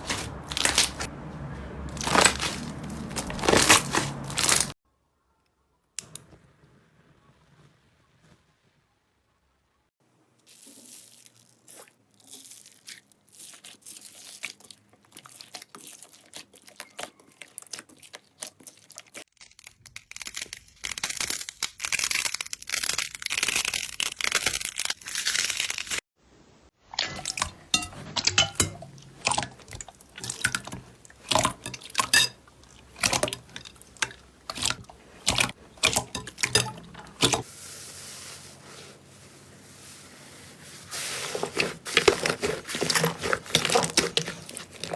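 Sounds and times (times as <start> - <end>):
hands squishing slime: 0.0 - 1.1, 1.9 - 4.8, 10.6 - 19.2, 38.8 - 44.9.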